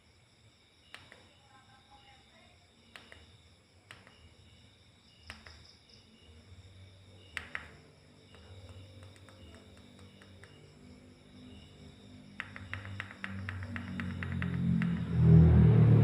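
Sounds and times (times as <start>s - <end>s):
crickets chirping: 0.0s - 16.0s
sharp clicks: 0.9s - 1.3s, 2.9s - 3.3s, 3.9s - 4.3s, 5.2s - 5.7s, 7.3s - 10.7s, 12.4s - 15.1s.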